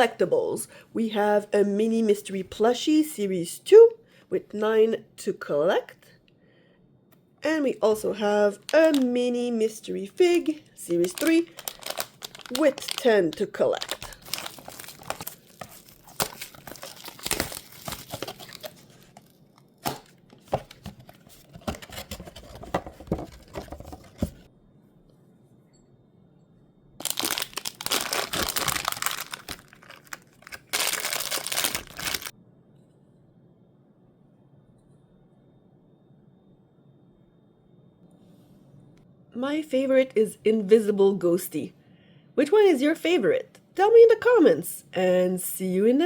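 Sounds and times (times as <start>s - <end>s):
packaging crinkling: 7.9s - 9.3s, 10.1s - 24.5s, 27.0s - 32.3s
packaging tearing: 8.6s - 9.1s, 10.3s - 20.9s, 27.0s - 32.3s.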